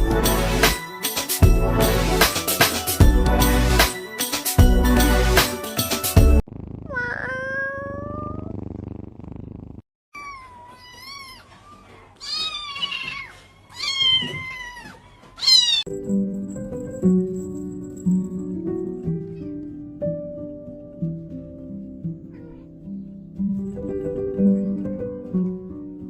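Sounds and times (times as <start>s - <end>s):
background music: 0.0s - 6.4s
cat meowing: 6.9s - 8.5s, 10.2s - 15.9s, 22.2s - 22.8s.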